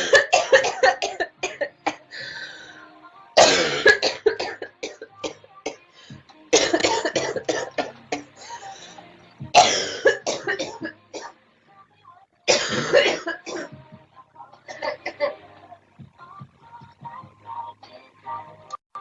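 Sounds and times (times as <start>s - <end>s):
girl coughing harshly: 0.0s - 2.0s, 3.4s - 5.1s, 6.6s - 8.2s, 9.6s - 11.3s, 12.5s - 13.8s, 14.7s - 15.3s.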